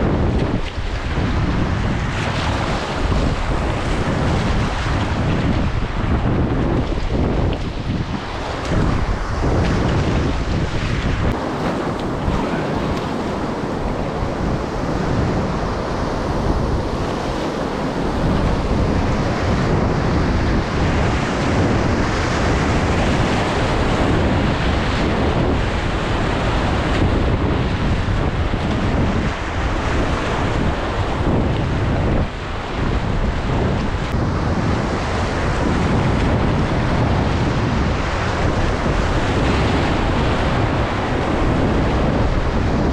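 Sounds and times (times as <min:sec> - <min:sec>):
wind buffeting microphone: 0:00.0 - 0:42.9
river rapids roaring: 0:00.8 - 0:34.6.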